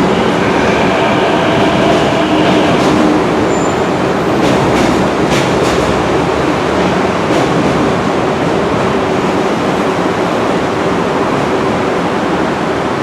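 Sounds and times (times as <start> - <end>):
metro train rushing rumble: 0.0 - 13.0.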